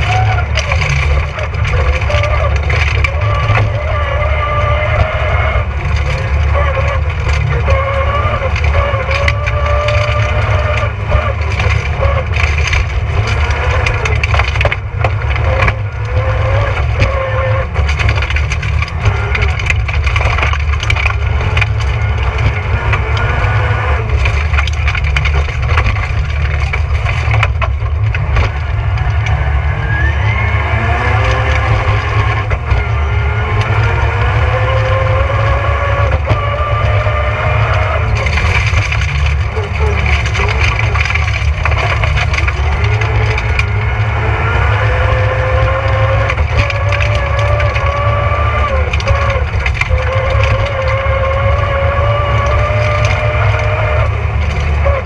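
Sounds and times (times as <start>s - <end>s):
gravel striking car body: 0.0s - 55.0s
heavy road rumble: 0.0s - 55.0s
rally car engine revving: 0.0s - 55.0s.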